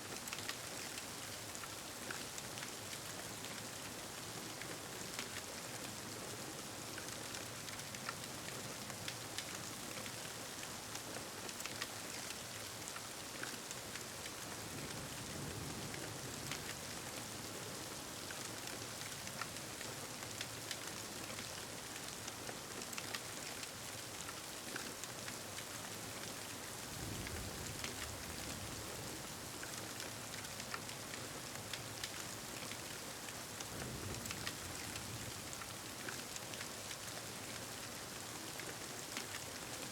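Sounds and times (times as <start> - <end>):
steady rain: 0.0 - 39.9
low rumble of thunder: 27.0 - 28.9
small crackles: 29.5 - 37.9.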